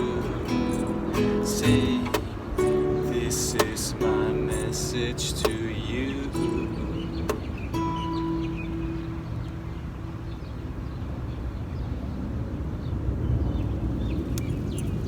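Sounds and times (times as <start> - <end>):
guitar note ringing: 0.0 - 10.6
faint bird chirps: 6.3 - 11.0.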